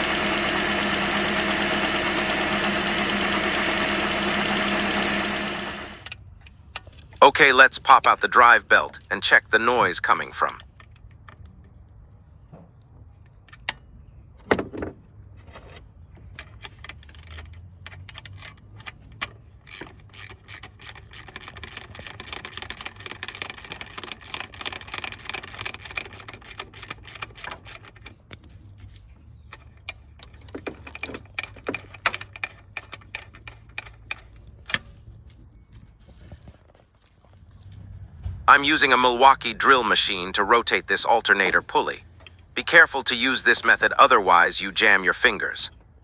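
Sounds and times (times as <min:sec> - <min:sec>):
rapid clicking: 0:00.0 - 0:06.1.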